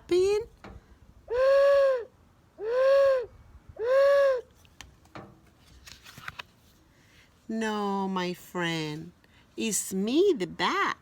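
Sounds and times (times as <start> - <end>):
owl hoots: 1.3 - 4.5.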